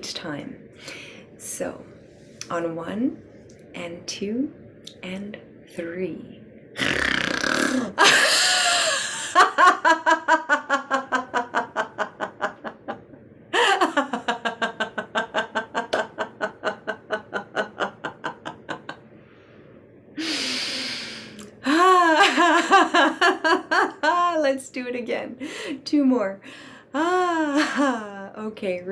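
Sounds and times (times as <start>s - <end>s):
person snoring in: 6.8s - 8.0s
person laughing: 7.6s - 19.1s.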